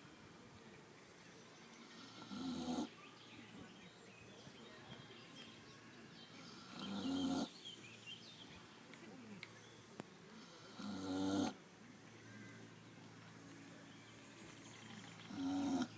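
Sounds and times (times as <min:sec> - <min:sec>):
pig snoring: 0:02.0 - 0:02.9, 0:06.5 - 0:07.5, 0:10.4 - 0:11.6, 0:14.9 - 0:15.9.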